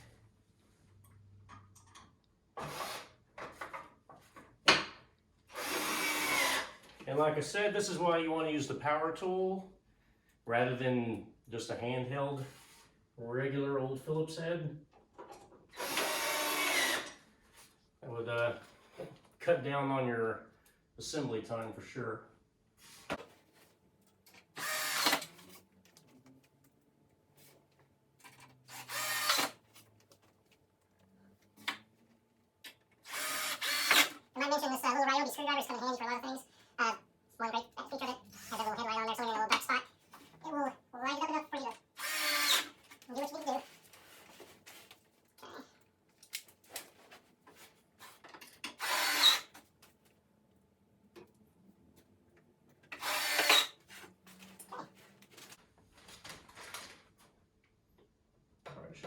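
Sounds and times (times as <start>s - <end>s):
cordless drill driving screw: 2.6s - 3.2s, 5.5s - 6.8s, 15.7s - 17.2s, 24.6s - 25.4s, 28.7s - 29.6s, 33.0s - 34.2s, 42.0s - 42.8s, 48.6s - 49.6s, 52.9s - 53.8s.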